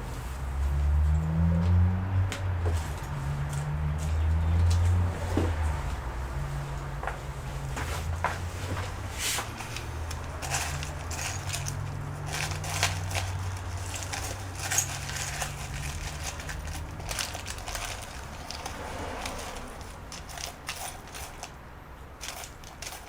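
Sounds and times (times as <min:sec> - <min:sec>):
small parts and tools clicking: 0:08.8 - 0:23.0.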